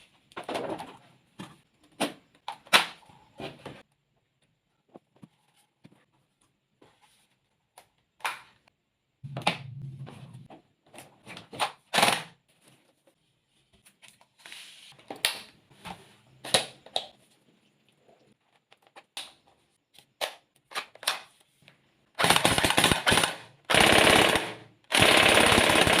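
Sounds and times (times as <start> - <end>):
toy gun full-auto bursts: 22.2 - 26.0.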